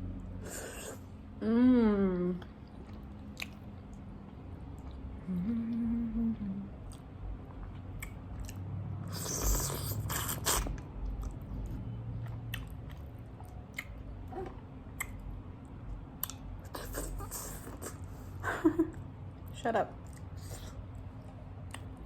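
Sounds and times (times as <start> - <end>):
person humming mmm: 0.4 - 2.5, 5.2 - 6.8
chewing and eating: 2.4 - 5.8, 6.4 - 18.4, 19.3 - 22.0
wet mouth clicks: 2.9 - 4.0, 7.7 - 11.4, 12.3 - 15.2, 16.2 - 18.1.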